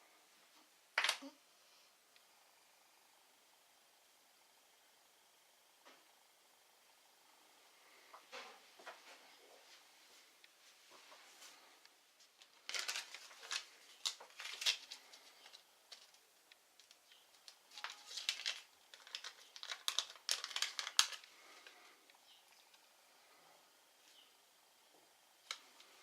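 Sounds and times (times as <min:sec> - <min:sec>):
crinkly rustling: 0:08.3 - 0:22.9.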